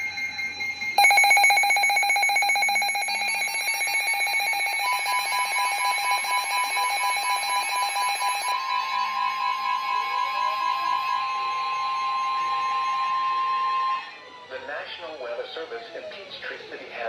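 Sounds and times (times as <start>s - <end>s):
steady electronic tone: 0.0s - 9.6s
rapidly pulsing alarm beep: 0.0s - 12.9s.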